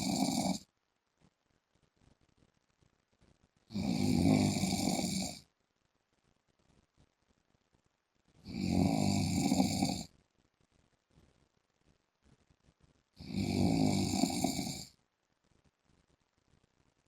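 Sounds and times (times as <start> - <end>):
man snoring: 0.0 - 0.6, 3.7 - 5.4, 8.5 - 10.1, 13.2 - 14.9.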